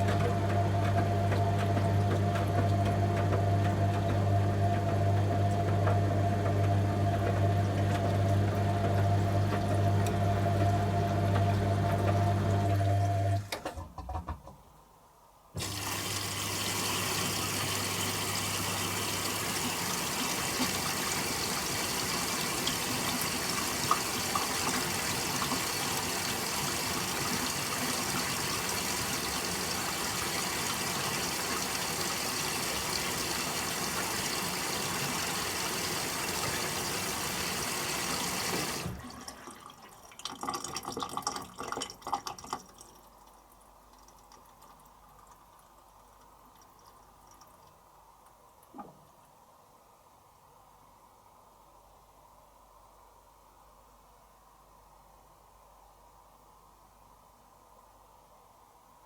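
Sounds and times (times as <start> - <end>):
drain pump motor hum: 0.0 - 13.5, 15.6 - 39.5
water rushing through inlet valve: 15.6 - 42.6.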